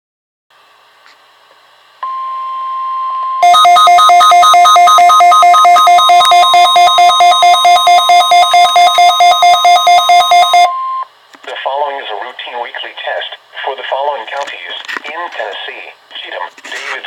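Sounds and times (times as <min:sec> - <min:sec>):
steady single beep: 0:02.0 - 0:11.1
pulsing electronic alert tone: 0:03.4 - 0:11.0.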